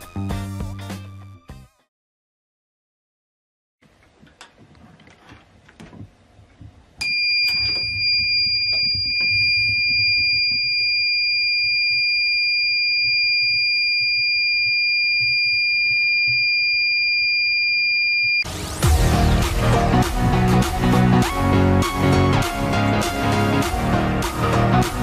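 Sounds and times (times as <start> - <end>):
buzzer high-pitched tone: 7.0 - 18.5.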